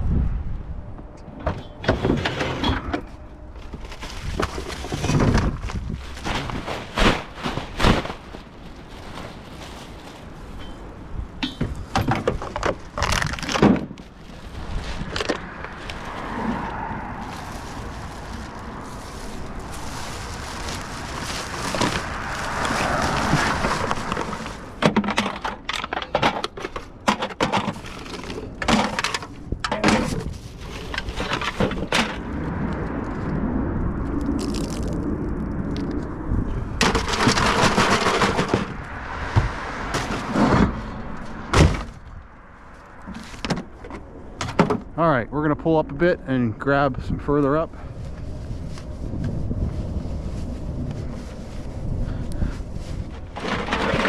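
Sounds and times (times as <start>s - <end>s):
plastic litter cracking and clattering: 3.6s - 16.3s, 17.2s - 32.2s, 36.8s - 38.9s, 53.1s - 54.0s
broad rushing noise: 14.0s - 24.8s.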